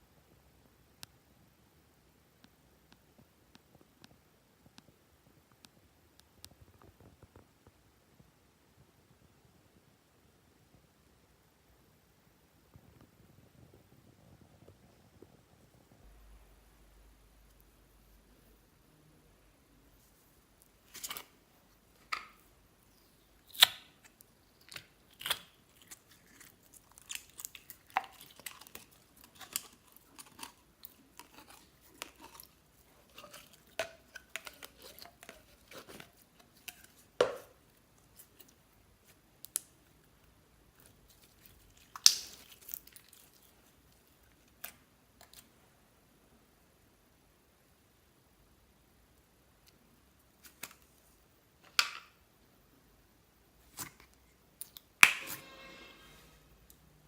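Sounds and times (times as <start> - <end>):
slime clicking and popping: 41.8 - 43.1.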